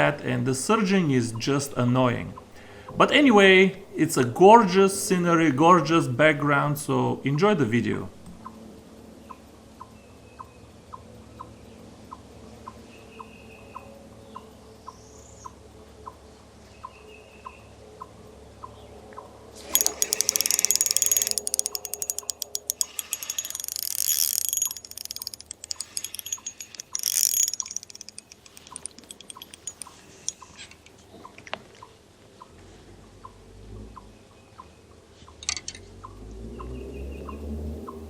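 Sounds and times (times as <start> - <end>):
fishing reel drag clicking: 19.7 - 29.9
slow even ticking: 19.8 - 30.0.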